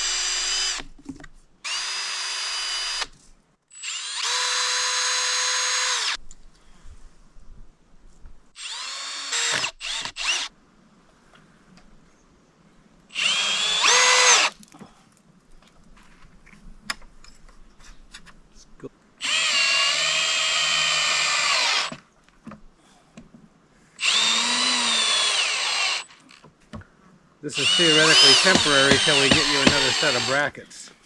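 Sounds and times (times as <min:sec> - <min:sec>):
power drill boring: 0:00.0 - 0:00.8, 0:01.7 - 0:03.1, 0:03.7 - 0:06.2, 0:08.6 - 0:10.5, 0:13.2 - 0:14.5, 0:19.2 - 0:21.9, 0:24.0 - 0:26.4, 0:27.5 - 0:30.5.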